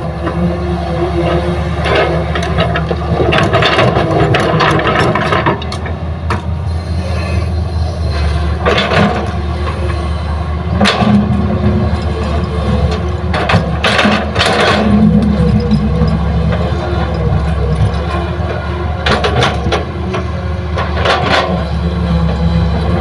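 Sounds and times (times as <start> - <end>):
excavator diesel engine running: 0.0 - 23.0.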